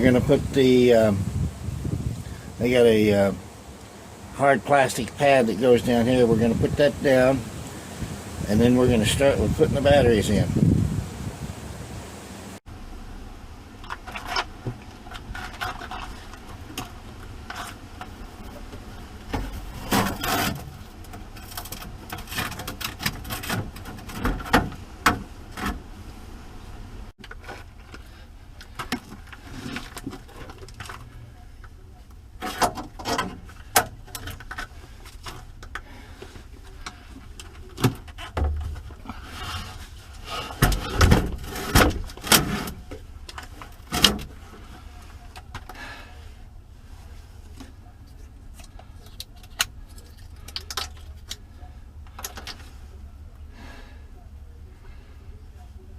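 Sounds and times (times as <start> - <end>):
hard objects knocking and scraping: 13.8 - 25.9.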